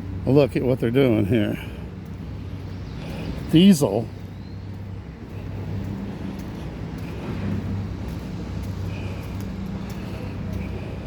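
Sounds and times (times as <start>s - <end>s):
low engine drone: 4.3s - 11.0s.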